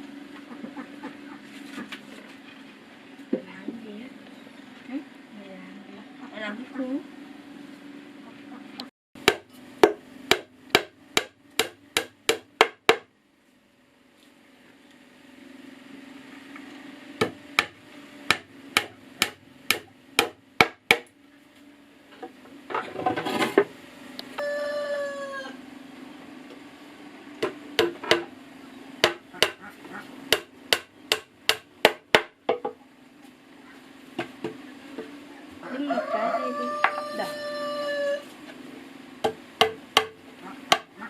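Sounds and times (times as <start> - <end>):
rooster crowing: 24.3 - 25.7, 35.6 - 38.3.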